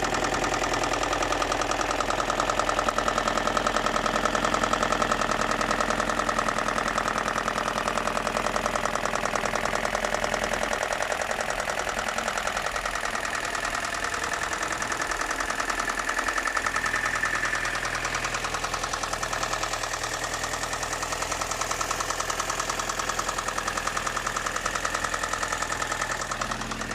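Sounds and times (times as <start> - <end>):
car engine idling with knocking: 0.0 - 26.9.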